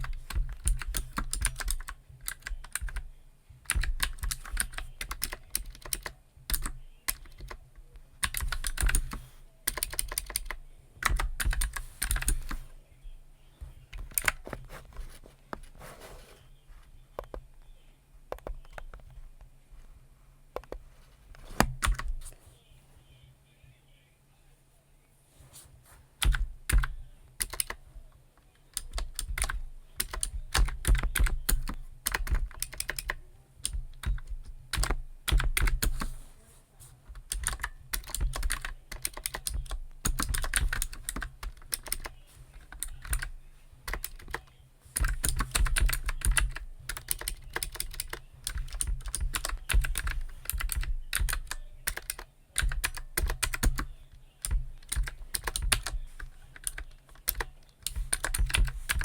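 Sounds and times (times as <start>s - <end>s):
typing on computer keyboard: 0.0s - 7.6s, 8.2s - 12.7s, 14.0s - 14.6s, 21.6s - 22.3s, 26.2s - 27.8s, 28.7s - 36.1s, 37.1s - 59.0s.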